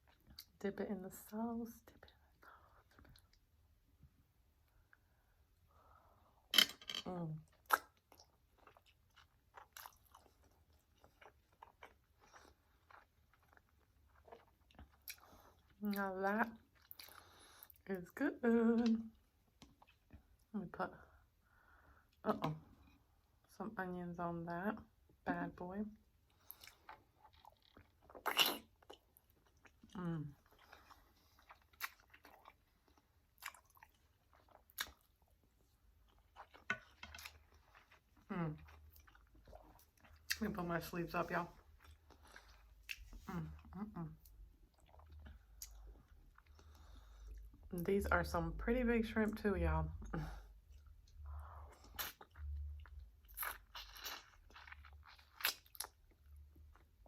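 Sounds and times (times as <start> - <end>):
mouth chewing sounds: 26.4 - 35.3, 41.6 - 47.8, 50.6 - 56.9
wet chewing mouth clicks: 26.5 - 29.9, 51.1 - 56.0.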